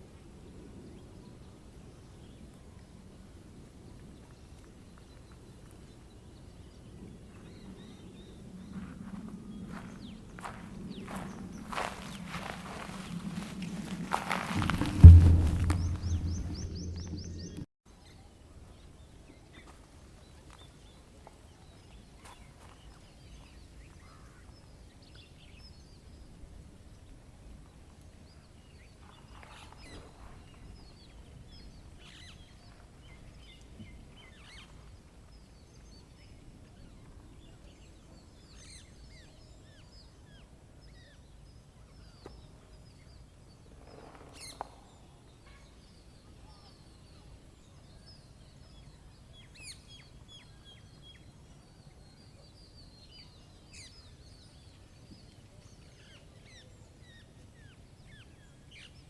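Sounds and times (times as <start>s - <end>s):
low background rumble: 10.1s - 17.6s.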